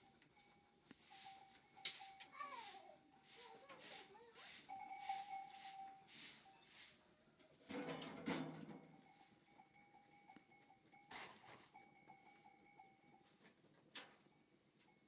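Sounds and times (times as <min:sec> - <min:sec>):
faint steady ringing tone: 0:00.0 - 0:03.8, 0:04.7 - 0:07.4, 0:08.6 - 0:15.0.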